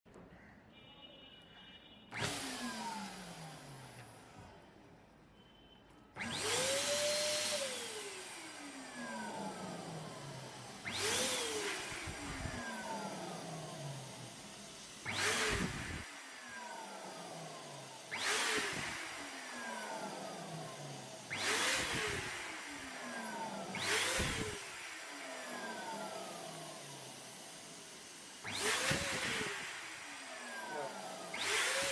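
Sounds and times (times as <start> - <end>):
electric pump motor whining: 2.1 - 4.5, 6.1 - 31.9.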